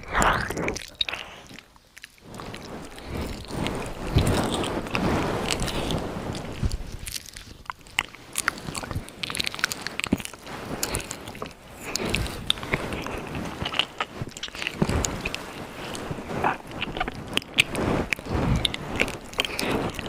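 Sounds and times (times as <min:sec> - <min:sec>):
wet mouth clicks and smacks: 0:00.0 - 0:05.0, 0:05.6 - 0:20.0
soft breathy swells: 0:00.0 - 0:07.5.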